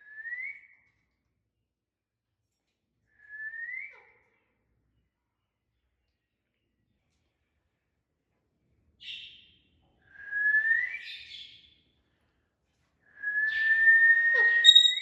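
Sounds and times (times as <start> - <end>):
parrot whistling: 13.5 - 15.0.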